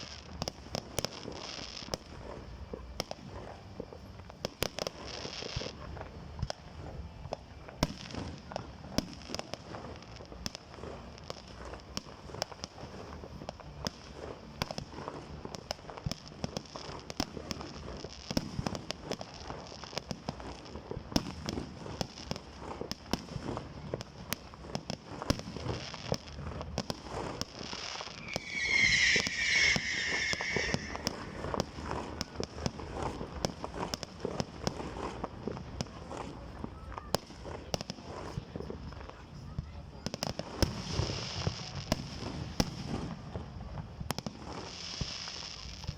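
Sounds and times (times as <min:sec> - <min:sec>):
fireworks popping and crackling: 0:00.0 - 0:45.9.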